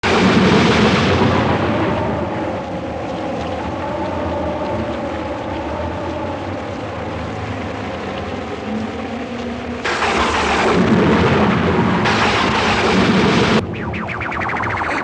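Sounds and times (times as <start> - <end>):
thunderclap rolling: 0.0 - 3.7, 9.8 - 15.0
storm noise: 0.0 - 7.9, 9.8 - 15.0.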